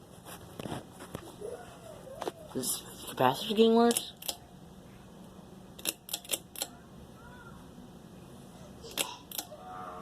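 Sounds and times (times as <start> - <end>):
fan motor humming: 0.0 - 10.0
fan speed control clicks: 3.6 - 4.5, 5.2 - 6.8, 8.9 - 9.5.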